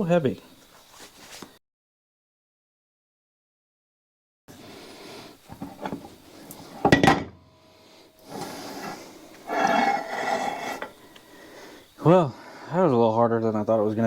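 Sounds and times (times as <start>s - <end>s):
metal knocking and sliding: 5.5s - 7.3s, 8.3s - 11.0s
metal scraping: 5.5s - 11.6s.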